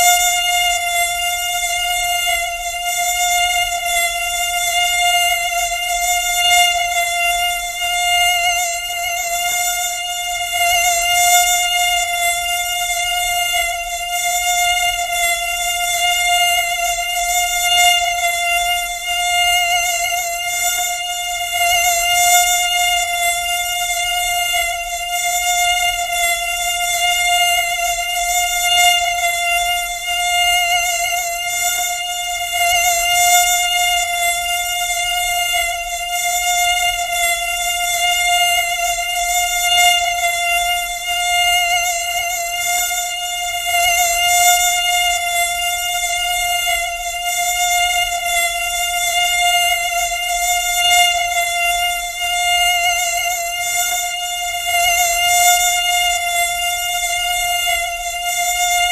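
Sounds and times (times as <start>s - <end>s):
mosquito wing whine: 0.0s - 58.9s.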